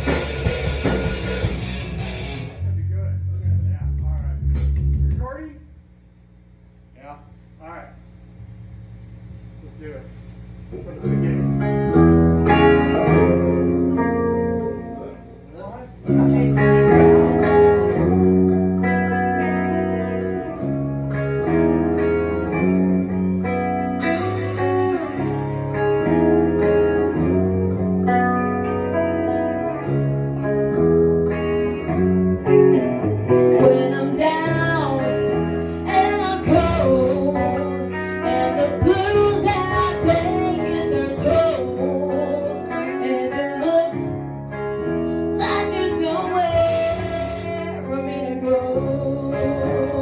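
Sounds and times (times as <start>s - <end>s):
guitar chords: 0.0s - 5.7s, 10.3s - 50.0s
person singing: 33.5s - 44.2s, 45.4s - 50.0s.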